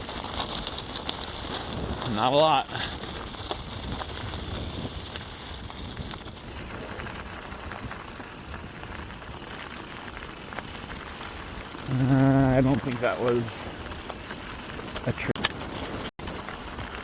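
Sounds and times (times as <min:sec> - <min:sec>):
bike clicking and rattling: 0:00.0 - 0:17.0
bike tyres rolling over dirt: 0:00.0 - 0:17.0
wind on microphone: 0:00.6 - 0:08.0.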